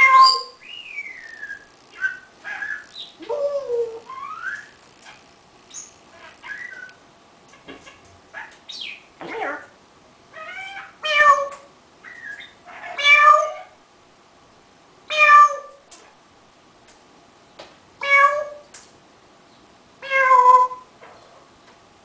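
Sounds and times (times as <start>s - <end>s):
parrot mimicking cat meows: 0.0s - 0.6s, 9.2s - 9.7s, 10.3s - 11.7s, 12.7s - 13.8s, 15.1s - 15.8s, 18.0s - 18.7s, 20.0s - 20.9s.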